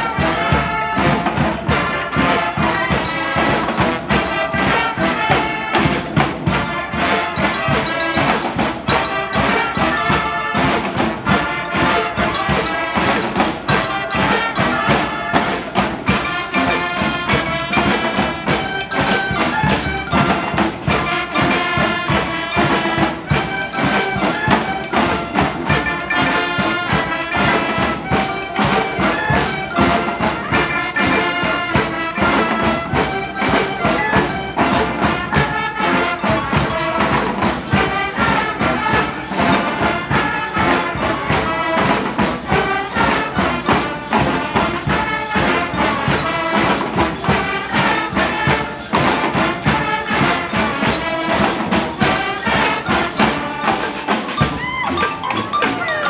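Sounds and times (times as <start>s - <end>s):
brass band playing salsa: 0.0s - 56.0s
steady drum beat: 0.0s - 56.0s.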